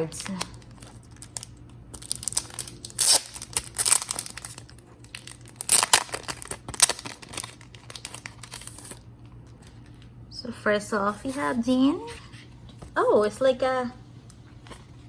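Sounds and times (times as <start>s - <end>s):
wrapping torn and crinkled: 0.0s - 10.0s.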